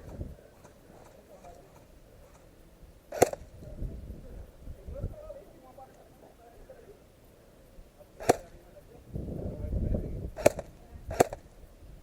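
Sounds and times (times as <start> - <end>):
airsoft gun shots: 3.1 - 3.5, 8.2 - 8.6, 10.4 - 11.5
low rumbling noise: 8.5 - 12.0.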